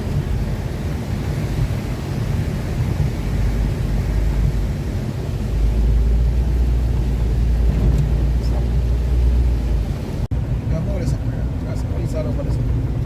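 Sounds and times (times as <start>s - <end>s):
car engine and road rumble: 0.0s - 13.0s
tyres hissing on wet road: 0.0s - 13.0s.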